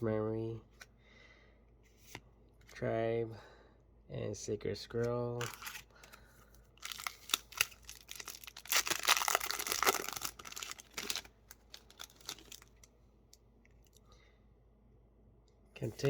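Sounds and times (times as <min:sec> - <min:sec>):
wrapper crinkling and tearing: 0:05.4 - 0:05.9, 0:06.8 - 0:12.9.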